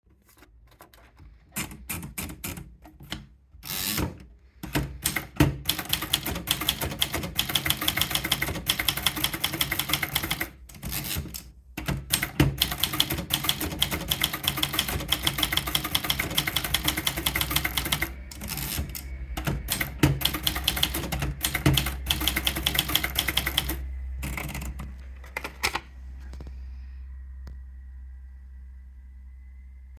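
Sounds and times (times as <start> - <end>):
typewriter keystrokes: 1.5 - 25.8
steady low hum: 14.3 - 30.0.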